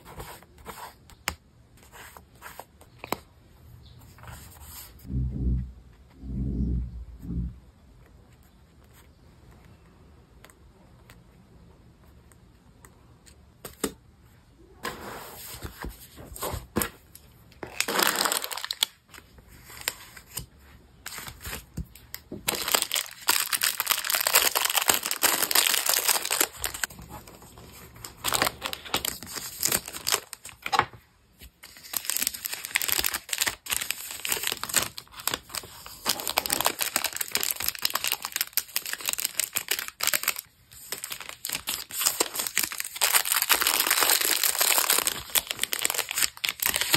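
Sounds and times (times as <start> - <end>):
paper crinkling and rustling: 17.6 - 46.9.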